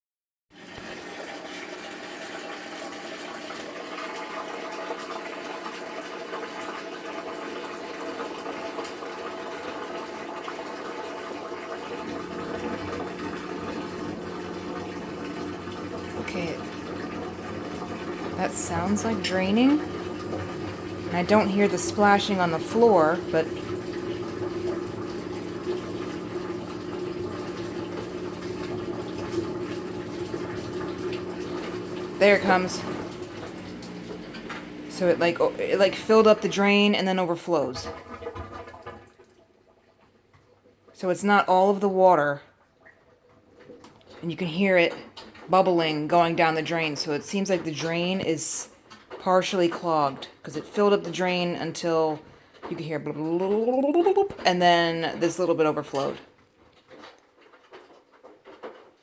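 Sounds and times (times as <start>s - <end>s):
water rushing: 0.6s - 39.0s
low pump hum: 0.7s - 56.2s.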